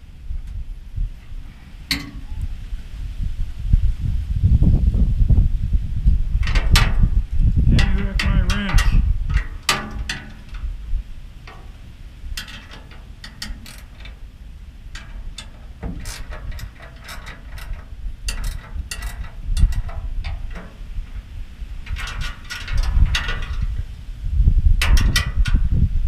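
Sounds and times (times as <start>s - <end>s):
ratchet wrench clicking: 12.4s - 14.2s, 14.9s - 20.7s.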